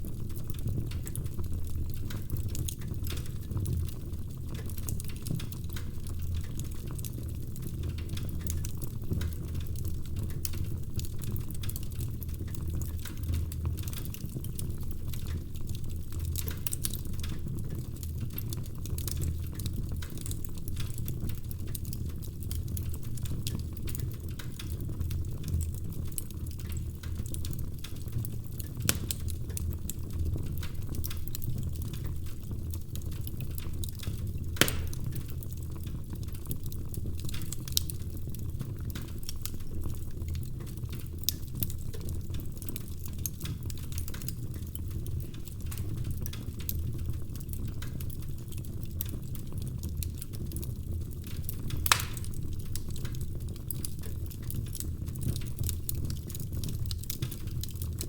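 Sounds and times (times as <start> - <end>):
fire popping: 0.0 - 58.0
firewood crackling: 0.0 - 58.0
low rumble of fire: 0.0 - 58.0.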